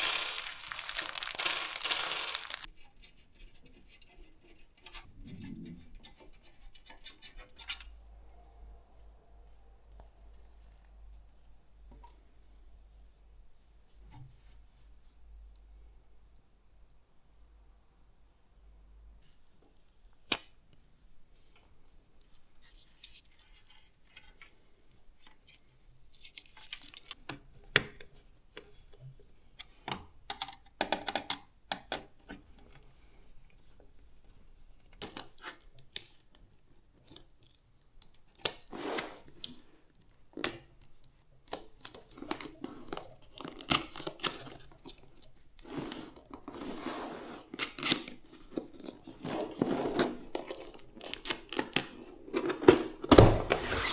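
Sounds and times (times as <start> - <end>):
tearing and crinkling: 0.0 - 2.7.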